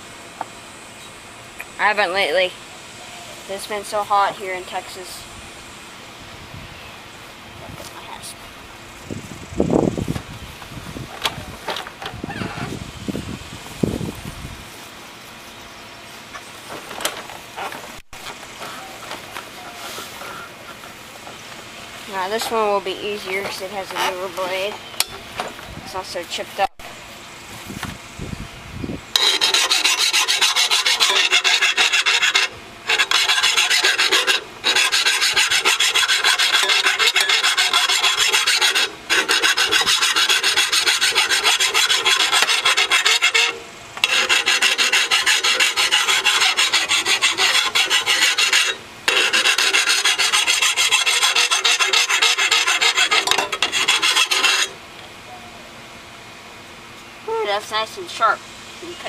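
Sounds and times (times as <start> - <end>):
file rasping on steel blade: 29.2 - 54.8.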